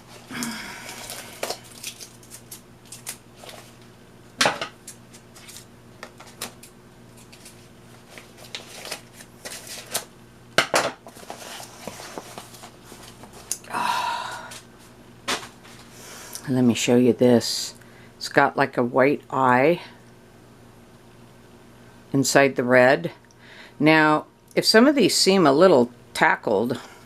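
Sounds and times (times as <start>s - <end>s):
paper rustling and crinkling: 0.9s - 3.9s, 4.8s - 10.1s, 11.0s - 13.6s.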